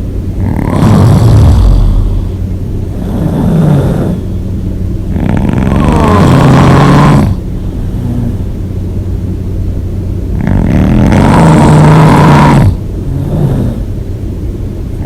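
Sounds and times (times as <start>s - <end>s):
rattling snores: 0.4s - 4.4s, 5.1s - 8.5s, 10.3s - 14.0s.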